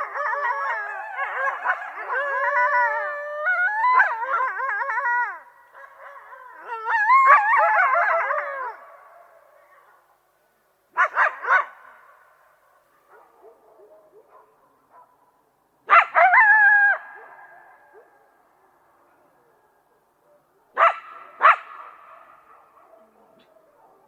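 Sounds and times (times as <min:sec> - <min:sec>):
coyote yipping and howling: 0:00.0 - 0:09.2, 0:15.9 - 0:18.2.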